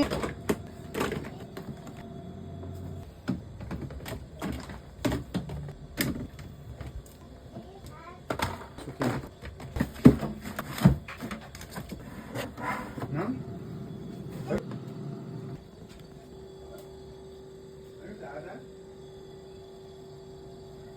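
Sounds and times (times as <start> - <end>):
containers clattering in refrigerator: 0.0 - 2.0, 3.0 - 7.0, 7.6 - 13.4
steady hum: 0.0 - 7.2, 12.0 - 20.9.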